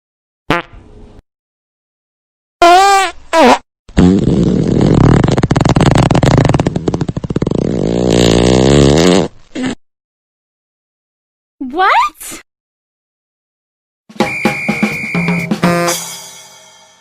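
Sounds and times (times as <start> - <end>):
fluttering fart sound effect: 0.5 - 0.8, 2.6 - 9.8.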